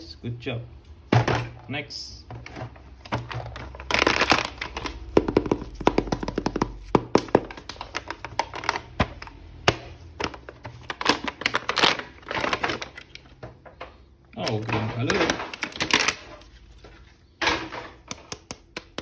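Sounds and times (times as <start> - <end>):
plastic packaging crinkling: 2.9 - 13.4, 14.4 - 17.2.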